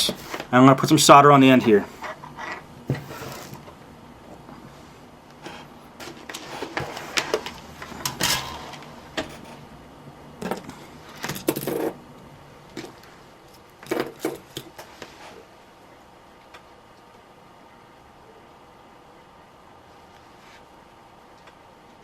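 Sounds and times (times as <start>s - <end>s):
scraping rustles of tools: 1.9s - 3.7s, 5.4s - 9.6s.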